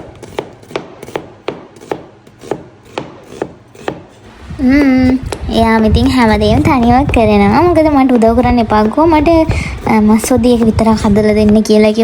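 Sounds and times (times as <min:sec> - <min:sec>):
knife chopping on a cutting board: 0:00.0 - 0:05.9.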